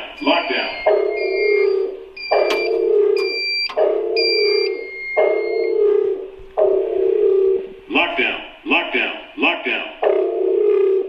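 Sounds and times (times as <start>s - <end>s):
high-pitched beeps: 0.0s - 6.8s
alarm warning tone: 0.0s - 11.0s.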